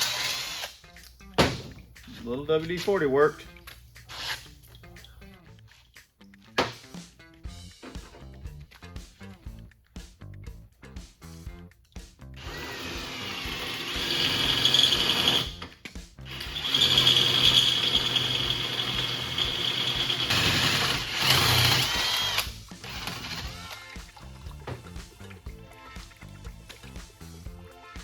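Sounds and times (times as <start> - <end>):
cordless drill whining: 0.0 - 0.7, 12.4 - 24.0
background music: 0.0 - 28.0.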